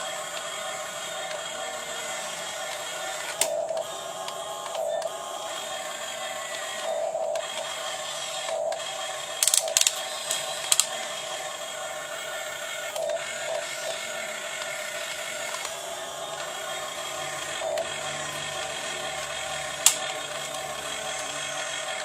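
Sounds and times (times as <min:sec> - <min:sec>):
small electric motors whirring: 0:00.0 - 0:22.0
sharp clicks: 0:02.4 - 0:05.2, 0:08.5 - 0:11.1, 0:19.7 - 0:20.8.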